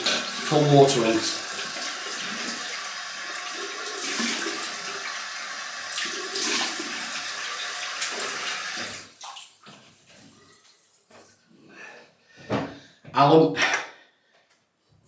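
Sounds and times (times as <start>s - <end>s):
water splashing: 0.0s - 5.2s, 5.8s - 9.9s
tap running into sink: 5.9s - 9.8s.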